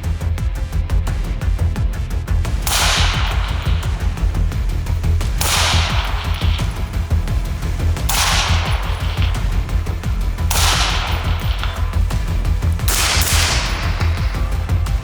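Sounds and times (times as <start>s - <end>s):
music with heavy bass beat: 0.0s - 15.0s.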